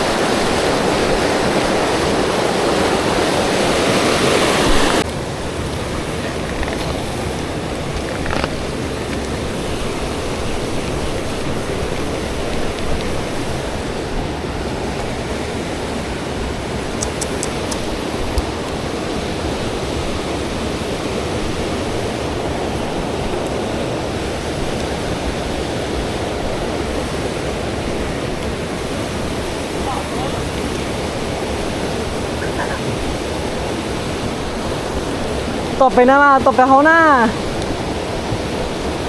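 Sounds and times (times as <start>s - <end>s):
river water flowing: 0.0s - 39.0s
faint sharp clicks: 17.0s - 18.8s.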